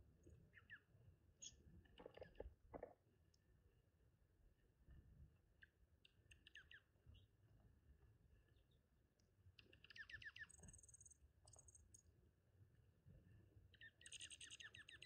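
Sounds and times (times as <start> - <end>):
small birds chirping: 0.2 - 2.9, 5.6 - 7.3, 8.4 - 12.1, 13.7 - 15.0.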